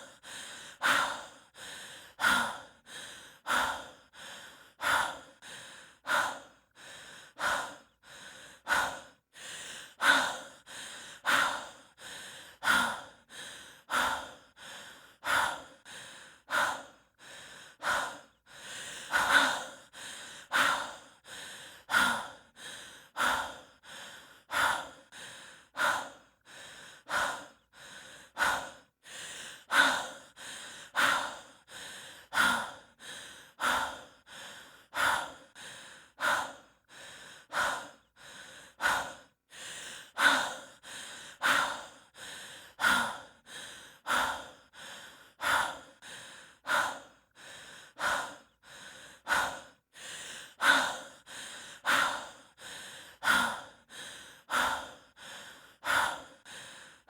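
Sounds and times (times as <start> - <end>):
person breathing hard: 0.0 - 57.0.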